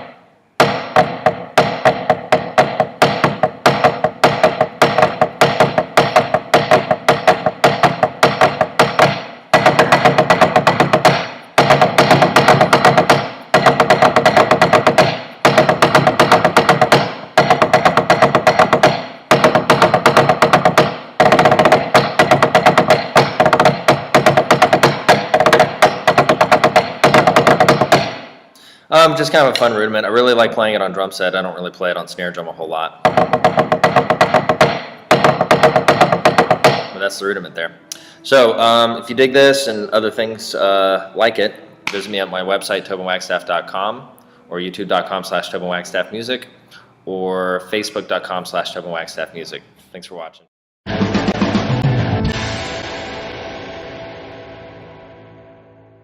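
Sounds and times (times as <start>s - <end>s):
snare drum played with sticks: 0.0s - 28.2s.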